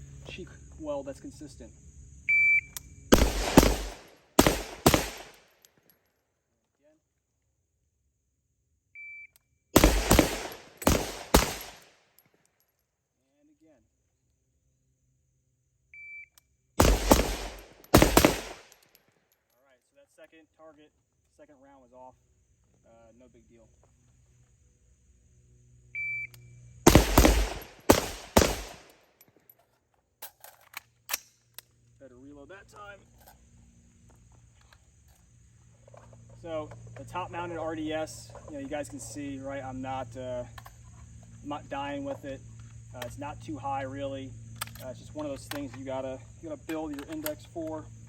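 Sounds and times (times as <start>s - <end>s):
shot timer beep: 2.3s - 2.8s, 26.0s - 26.4s
rifle shots with echo: 3.1s - 5.4s, 9.8s - 11.9s, 16.8s - 18.8s, 26.8s - 28.9s.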